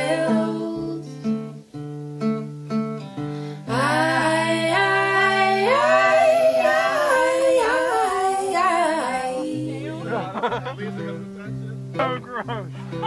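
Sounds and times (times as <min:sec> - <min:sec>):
woman singing wordless melody: 0:00.0 - 0:01.6, 0:03.6 - 0:10.2.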